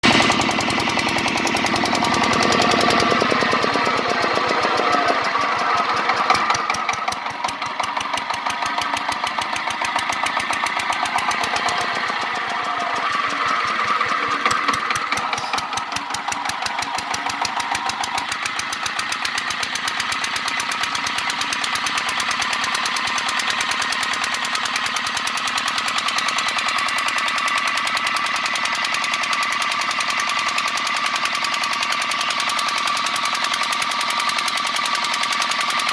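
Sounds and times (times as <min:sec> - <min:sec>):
engine running with rapid knocking: 0:00.0 - 0:35.9.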